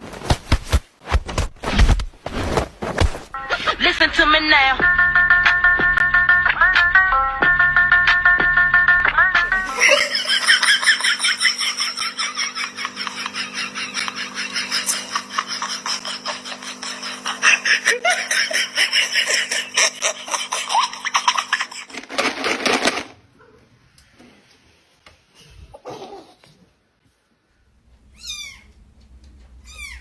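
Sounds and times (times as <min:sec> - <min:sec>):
steady low hum: 0:09.5 - 0:21.7
person laughing hard: 0:09.5 - 0:22.2.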